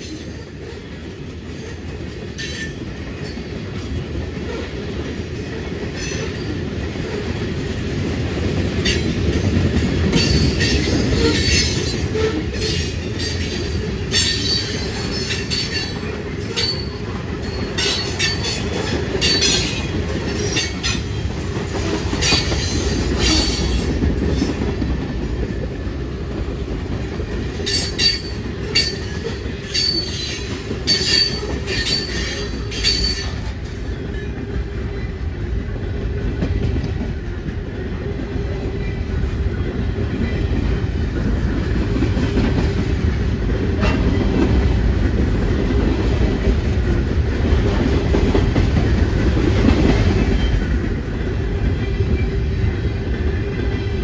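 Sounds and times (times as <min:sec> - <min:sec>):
train rumbling past: 0:00.0 - 0:54.0
train wheel clicks: 0:08.4 - 0:25.7, 0:26.4 - 0:34.4
wheel squeals: 0:10.1 - 0:21.2, 0:27.7 - 0:33.4.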